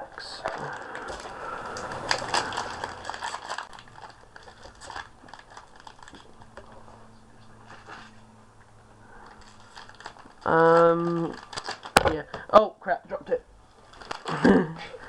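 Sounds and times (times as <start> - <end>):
foil wrapper crinkling: 0.2 - 6.8, 9.1 - 12.4, 13.8 - 14.4.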